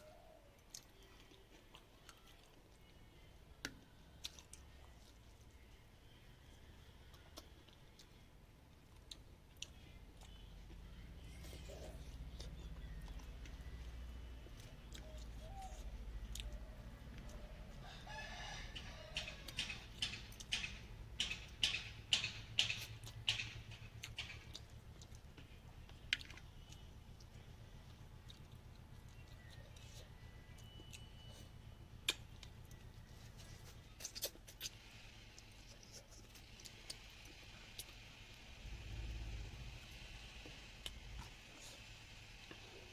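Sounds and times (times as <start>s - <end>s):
person chewing: 3.6s - 5.4s, 6.5s - 17.9s, 23.9s - 42.6s
low hum: 35.1s - 42.9s.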